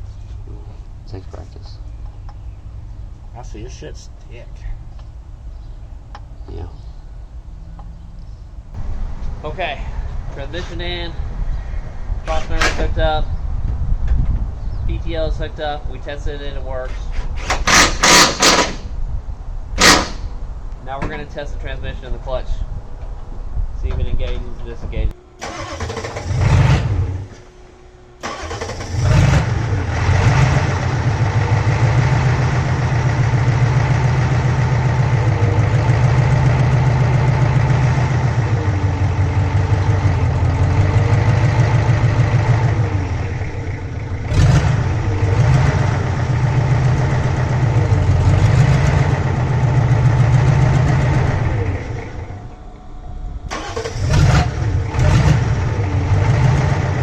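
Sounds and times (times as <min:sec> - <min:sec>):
diesel engine starting and running: 0:17.4 - 0:19.0, 0:19.8 - 0:20.4, 0:25.2 - 0:57.0.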